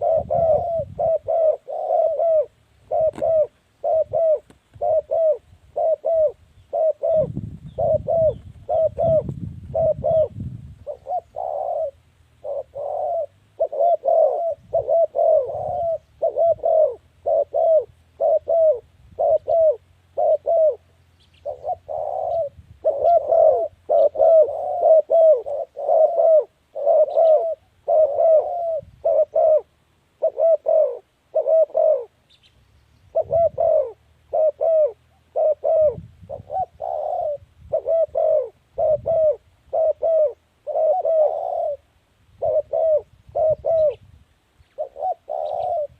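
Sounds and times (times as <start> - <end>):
dove cooing: 0.0 - 32.5, 33.1 - 45.9.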